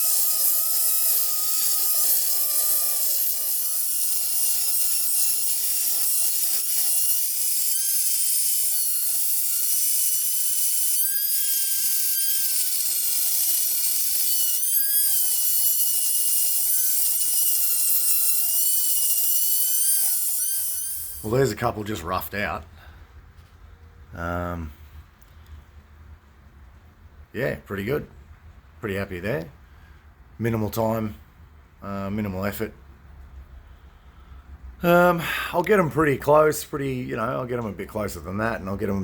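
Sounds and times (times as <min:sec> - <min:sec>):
die grinder whining: 0:00.0 - 0:21.5
grinder burr scratching metal: 0:00.0 - 0:22.3.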